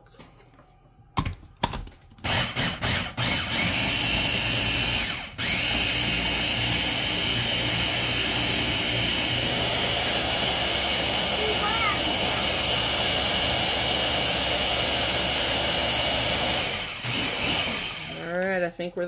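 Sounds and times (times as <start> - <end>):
blender blending: 2.2 - 18.4.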